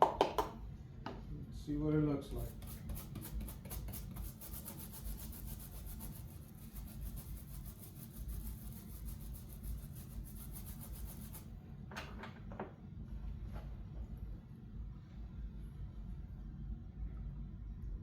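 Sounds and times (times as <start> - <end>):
brush scrubbing circuit board: 2.3 - 11.5.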